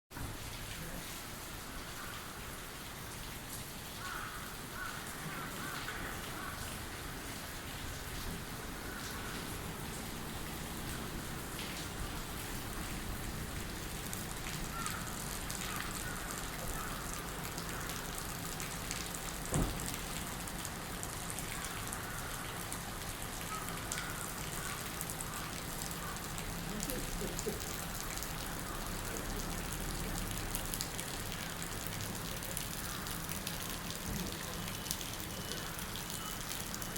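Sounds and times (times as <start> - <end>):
rain pattering and dripping: 0.1 - 36.9
loud thump: 19.5 - 19.9.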